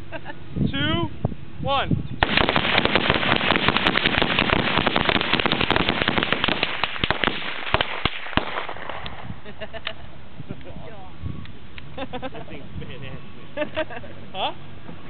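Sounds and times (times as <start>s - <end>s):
rifles firing rapidly: 2.2s - 9.1s.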